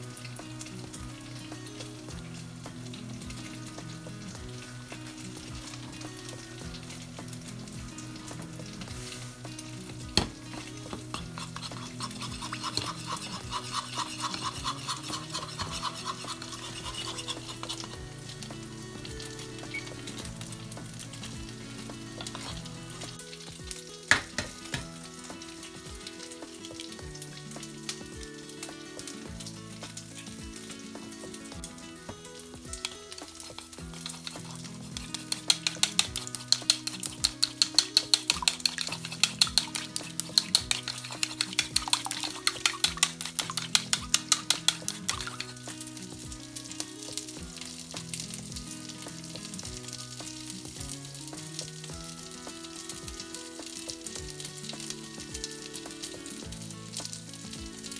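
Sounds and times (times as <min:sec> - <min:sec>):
food sizzling in a pan: 0:00.0 - 0:57.9
soft background music: 0:00.0 - 0:57.9
utensil stirring and scraping: 0:05.0 - 0:23.3, 0:32.8 - 0:57.9.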